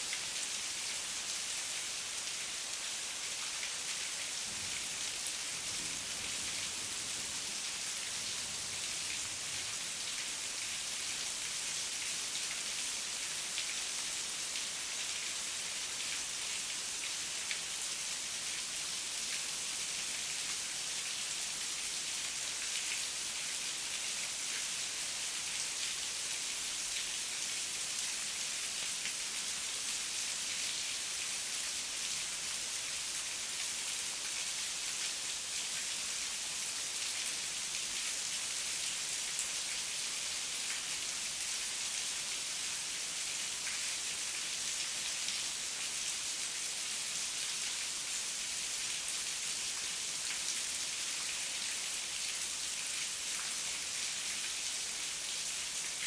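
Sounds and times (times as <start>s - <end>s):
heavy rain: 0.0s - 12.7s.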